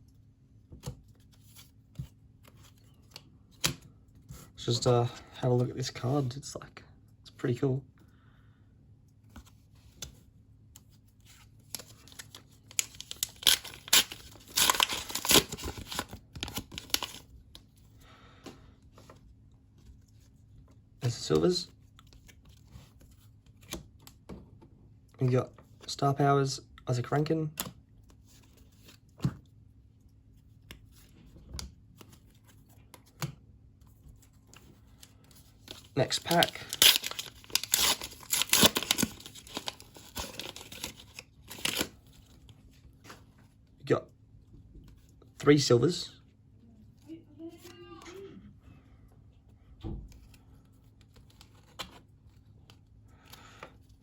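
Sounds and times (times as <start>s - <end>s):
wrapper tearing and crinkling: 11.7s - 17.2s, 35.8s - 42.0s.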